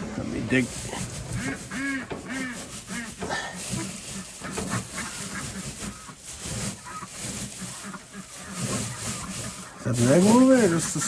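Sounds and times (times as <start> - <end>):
ducks quacking: 0.0 - 11.0
hand rustling through straw: 0.0 - 11.0.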